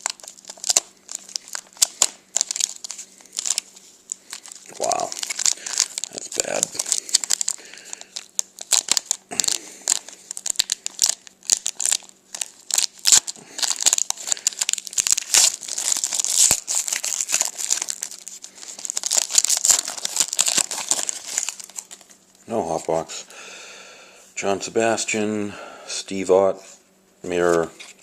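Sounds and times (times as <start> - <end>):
card pack wrappers crinkling: 0.0 - 22.4.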